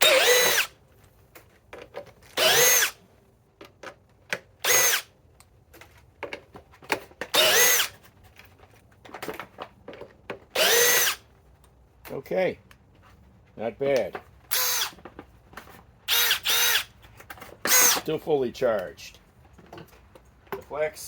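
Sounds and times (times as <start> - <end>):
drill motor whine: 0.0 - 0.7, 2.4 - 3.0, 4.6 - 5.0, 7.4 - 7.9, 10.6 - 11.2, 14.5 - 14.9, 16.1 - 16.9.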